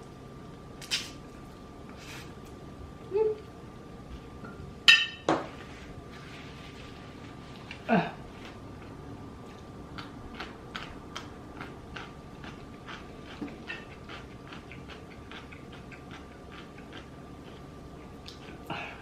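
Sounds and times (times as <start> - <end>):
person chewing food: 6.8 - 18.7.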